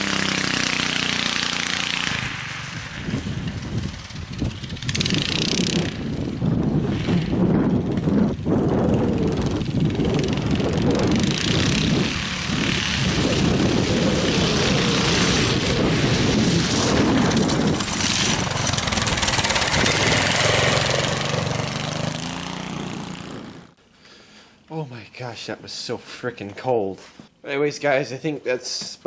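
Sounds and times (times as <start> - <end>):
go-kart engine running: 0.0 - 23.8
loud rushing noise: 9.1 - 23.8.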